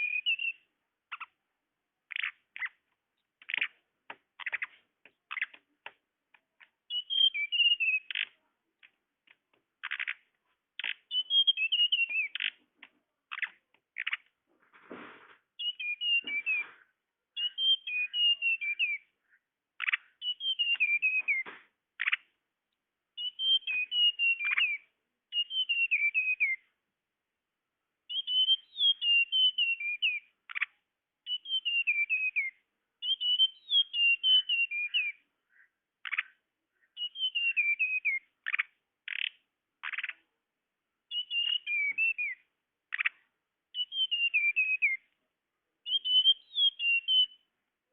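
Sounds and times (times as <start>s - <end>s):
bird calls with quick chirps: 0.0s - 1.4s, 2.1s - 6.0s, 6.6s - 8.5s, 9.8s - 12.6s, 15.6s - 22.3s, 23.2s - 26.6s, 28.1s - 40.3s, 41.1s - 45.1s, 45.8s - 47.5s.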